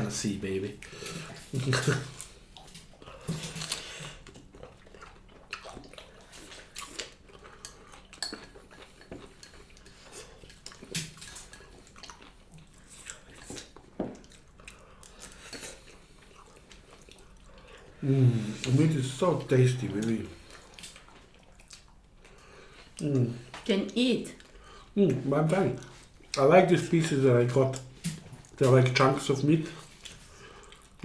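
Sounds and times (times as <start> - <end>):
faint slurping and chewing: 0.2 - 31.0.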